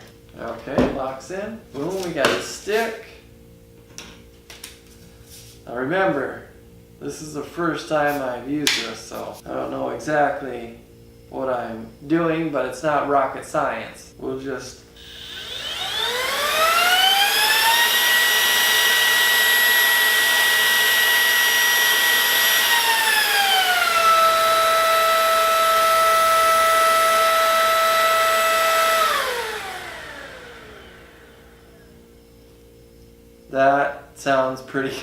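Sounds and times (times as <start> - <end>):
vacuum motor whining: 15.0 - 33.1.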